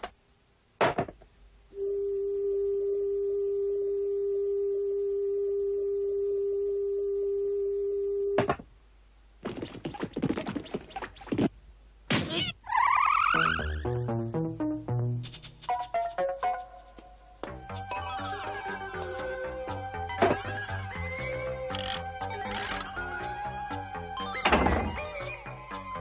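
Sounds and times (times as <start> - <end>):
quick scratchy clicks: 21.7 - 23.0.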